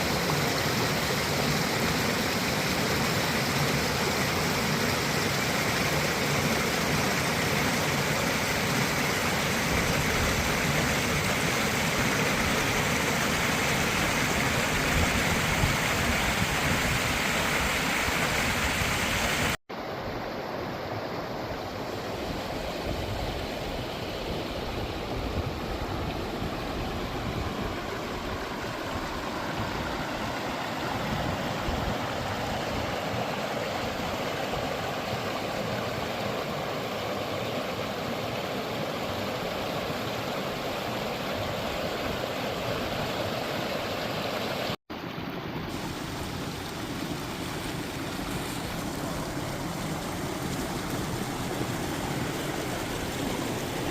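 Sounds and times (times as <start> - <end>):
stream flowing: 0.0 - 53.9.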